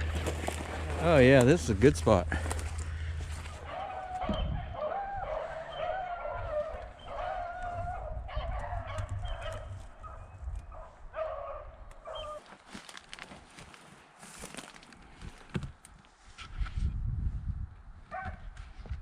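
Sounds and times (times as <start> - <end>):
low wind rumble: 0.0 - 12.4, 16.5 - 19.0
hounds baying: 2.0 - 12.4.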